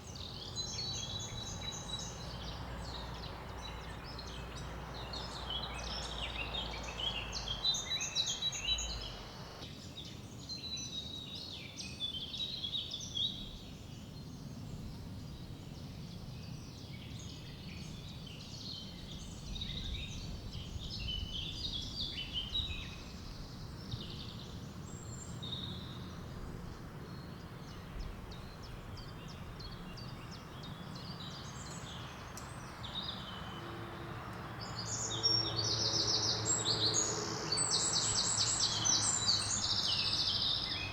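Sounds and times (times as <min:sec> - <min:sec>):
small birds chirping and singing: 0:00.0 - 0:40.9.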